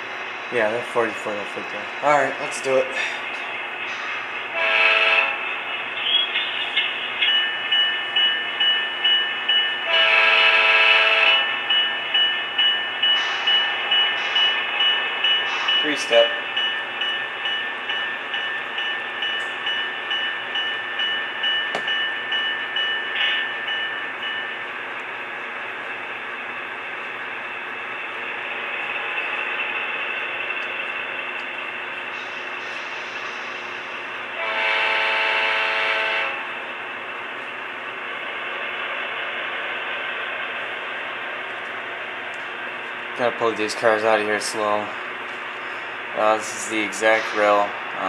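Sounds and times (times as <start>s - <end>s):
model train horn: 4.6s - 5.4s, 9.9s - 11.4s, 34.4s - 36.4s
pulsing model train engine sound: 28.2s - 36.4s.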